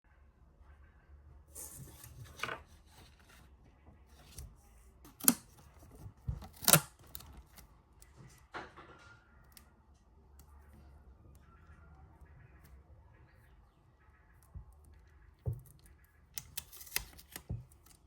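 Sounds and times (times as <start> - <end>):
paper rustling: 1.6 - 3.5.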